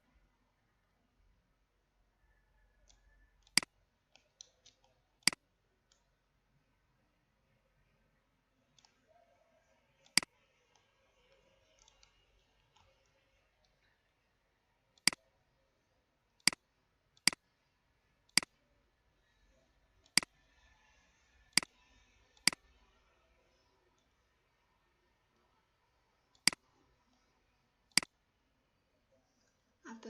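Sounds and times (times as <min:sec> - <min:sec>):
computer mouse clicking: 0:02.8 - 0:06.1, 0:10.0 - 0:13.9, 0:15.0 - 0:15.2, 0:17.2 - 0:17.4, 0:18.3 - 0:18.6, 0:20.0 - 0:20.6, 0:21.5 - 0:22.8, 0:26.3 - 0:27.3, 0:27.9 - 0:28.2.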